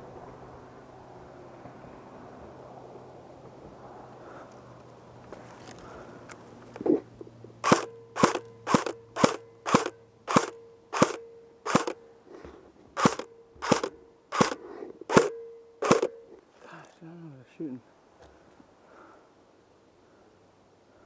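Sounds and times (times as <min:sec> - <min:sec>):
airsoft gun shots: 0:07.6 - 0:12.0, 0:13.0 - 0:16.2.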